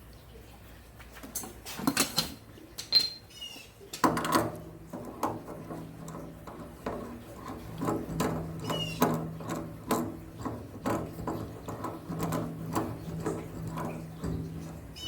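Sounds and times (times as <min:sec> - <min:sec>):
hand tools clicking and knocking: 0:04.0 - 0:15.0.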